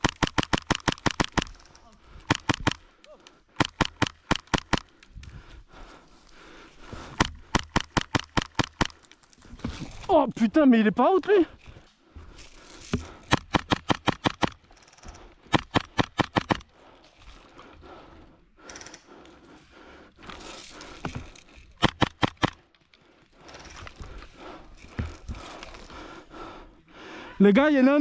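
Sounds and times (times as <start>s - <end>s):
airsoft gun firing bursts: 0.0s - 1.6s, 2.3s - 2.8s, 3.6s - 4.9s, 7.2s - 9.0s, 13.2s - 14.6s, 15.5s - 16.6s, 21.8s - 22.6s.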